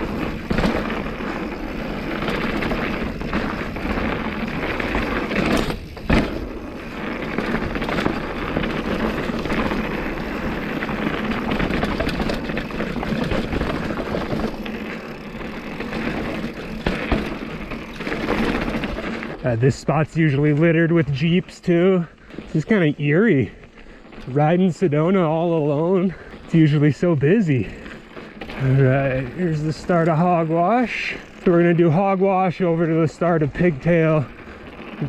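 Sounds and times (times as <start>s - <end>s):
bike knocks and rattles: 0.0s - 19.4s
bike tyres rumbling on rocks: 0.0s - 35.0s.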